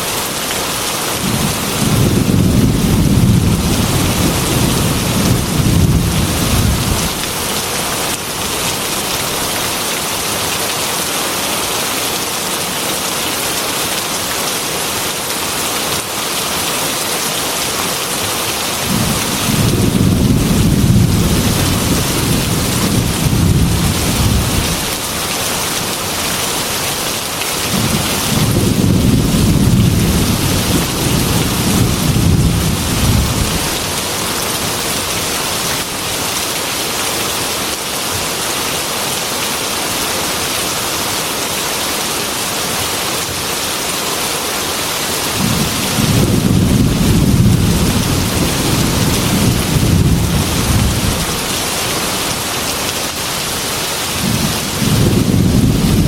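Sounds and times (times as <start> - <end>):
heavy rain: 0.0 - 56.0
rolling thunder: 1.2 - 7.2, 18.9 - 24.8, 27.7 - 33.9, 45.4 - 51.5, 54.2 - 56.0.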